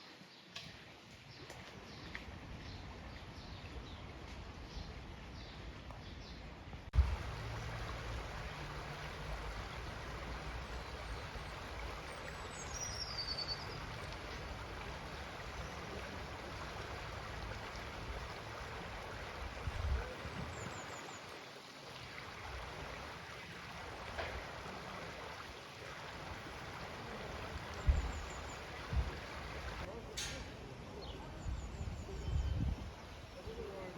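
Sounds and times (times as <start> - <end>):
stream flowing: 6.9 - 31.3.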